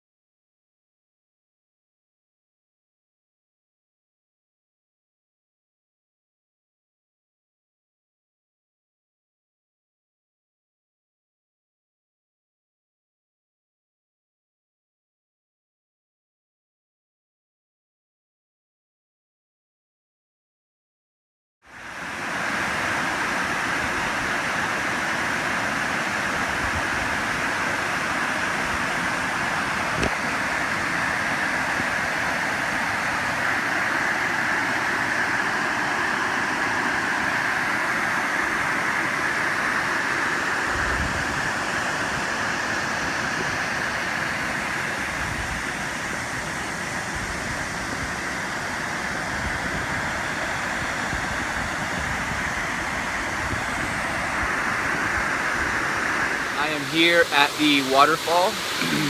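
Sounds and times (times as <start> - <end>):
waterfall rushing: 21.8 - 59.0.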